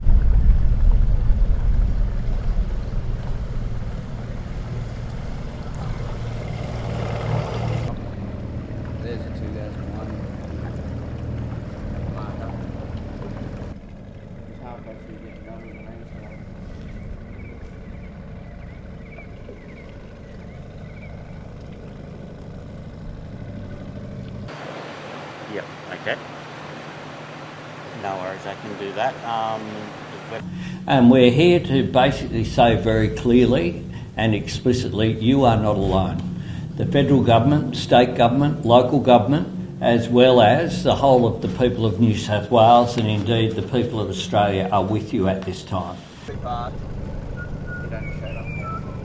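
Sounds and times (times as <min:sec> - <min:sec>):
rumbling wind noise: 0:00.0 - 0:07.2
low engine hum: 0:00.0 - 0:49.0.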